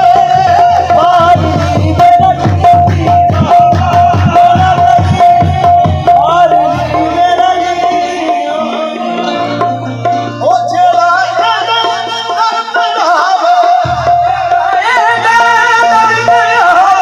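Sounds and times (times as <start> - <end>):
held melodic drone: 0.0 - 12.4
person singing: 0.0 - 17.0
tabla drumming: 0.0 - 17.0.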